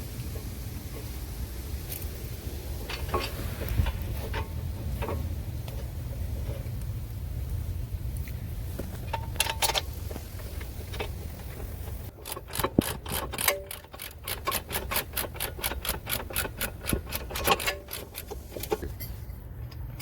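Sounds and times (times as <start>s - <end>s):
hand ratchet clicking: 10.6s - 18.8s.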